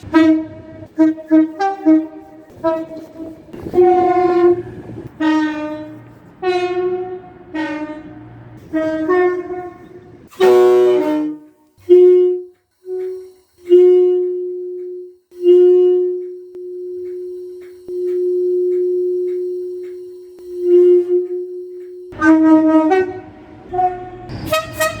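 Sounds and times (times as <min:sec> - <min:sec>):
train horn blasts: 0:00.0 - 0:25.0
low engine rumble: 0:02.0 - 0:10.8, 0:16.4 - 0:25.0.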